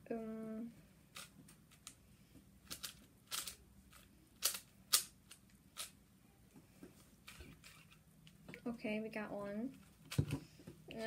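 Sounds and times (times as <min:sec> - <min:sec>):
puzzle cube plastic clicks: 0:02.6 - 0:05.9.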